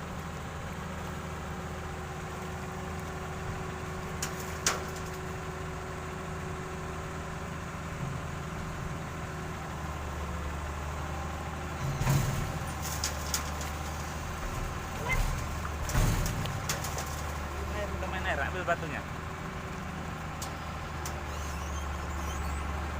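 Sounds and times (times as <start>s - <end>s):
excavator diesel engine running: 0.0s - 22.9s.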